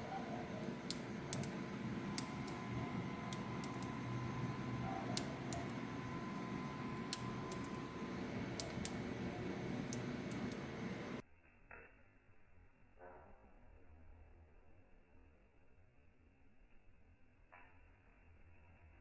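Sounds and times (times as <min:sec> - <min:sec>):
faint steady hum: 0:00.0 - 0:11.2
click beetle clicking: 0:00.8 - 0:04.1, 0:05.1 - 0:05.8.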